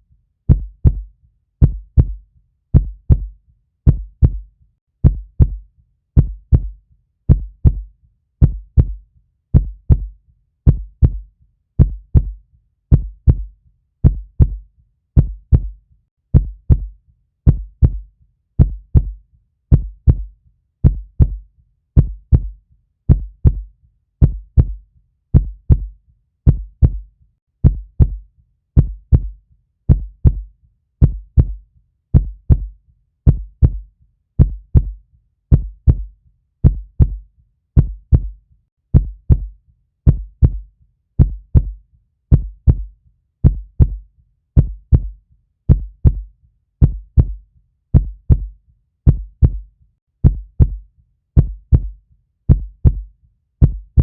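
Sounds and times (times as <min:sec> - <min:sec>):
heartbeat double thump: 0:00.5 - 0:01.0, 0:01.6 - 0:02.2, 0:02.8 - 0:03.3, 0:03.9 - 0:04.4, 0:05.0 - 0:05.6, 0:06.2 - 0:06.7, 0:07.3 - 0:07.8, 0:08.4 - 0:09.0, 0:09.6 - 0:10.1, 0:10.7 - 0:11.2, 0:11.8 - 0:14.6, 0:15.2 - 0:15.7, 0:16.3 - 0:16.9, 0:17.5 - 0:18.0, 0:18.6 - 0:21.4, 0:22.0 - 0:22.5, 0:23.1 - 0:23.6, 0:24.2 - 0:24.8, 0:25.4 - 0:25.9, 0:26.5 - 0:27.0, 0:27.6 - 0:28.2, 0:28.8 - 0:29.3, 0:29.9 - 0:30.4, 0:31.0 - 0:31.6, 0:32.2 - 0:32.7, 0:33.3 - 0:33.8, 0:34.4 - 0:37.2, 0:37.8 - 0:38.3, 0:39.0 - 0:39.5, 0:40.1 - 0:40.6, 0:41.2 - 0:44.0, 0:44.6 - 0:45.1, 0:45.7 - 0:46.2, 0:46.8 - 0:47.4, 0:48.0 - 0:48.5, 0:49.1 - 0:49.6, 0:50.2 - 0:50.8, 0:51.4 - 0:51.9, 0:52.5 - 0:53.0, 0:53.6 - 0:54.0.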